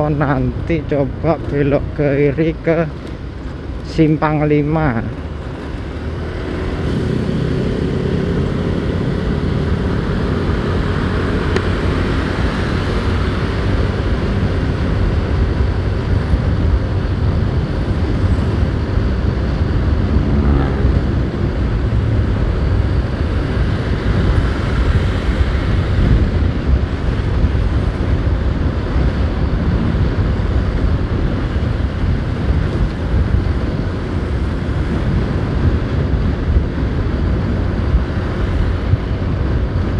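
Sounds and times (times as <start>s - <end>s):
wind rush on microphone: 0.0s - 39.9s
motorcycle engine: 5.2s - 36.2s.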